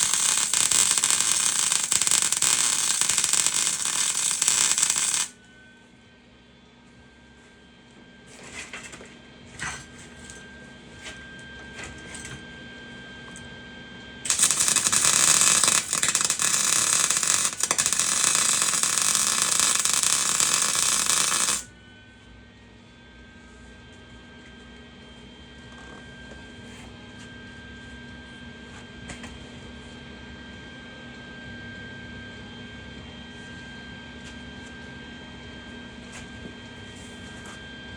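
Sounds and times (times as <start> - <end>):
welding arc crackling: 0.0 - 5.3, 14.3 - 21.7.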